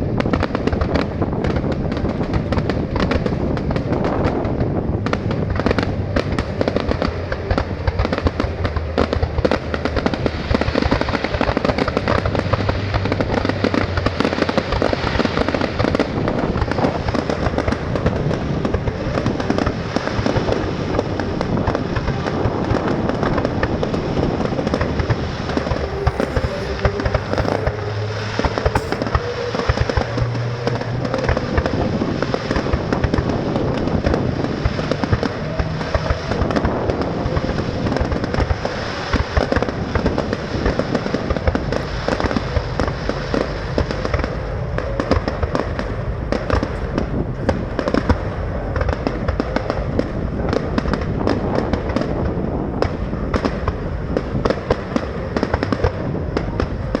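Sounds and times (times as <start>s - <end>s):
fireworks bangs and crackling: 0.0s - 57.0s.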